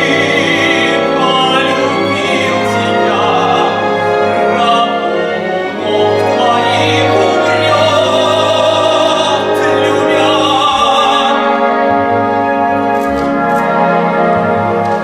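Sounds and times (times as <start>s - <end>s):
operatic singing voice: 0.0s - 11.9s
instrumental accompaniment: 0.0s - 15.0s.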